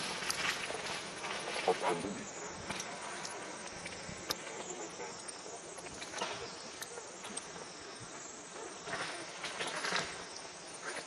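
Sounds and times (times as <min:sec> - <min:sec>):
faint clicks: 0:02.7 - 0:07.6.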